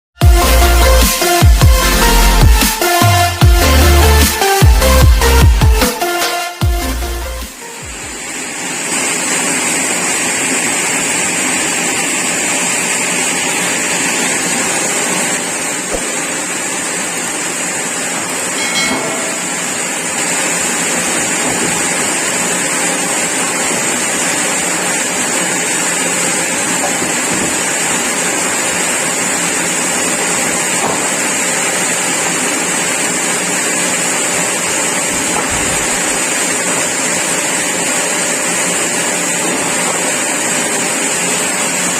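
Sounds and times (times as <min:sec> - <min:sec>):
sawmill saw running: 0:00.2 - 0:41.9
brief metallic ring: 0:18.5 - 0:20.0.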